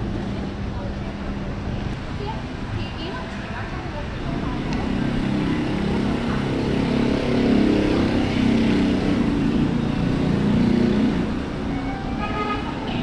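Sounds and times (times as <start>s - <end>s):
passing vehicle engines: 0.0s - 13.0s.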